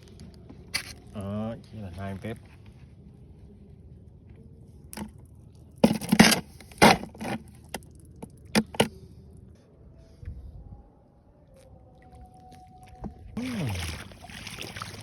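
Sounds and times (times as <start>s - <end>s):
scraping and rattling: 5.8s - 7.4s.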